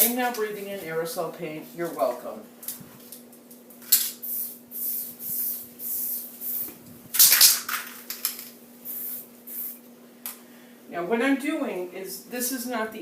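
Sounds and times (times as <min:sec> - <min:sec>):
spray can hissing: 0:03.9 - 0:07.4, 0:08.3 - 0:09.8.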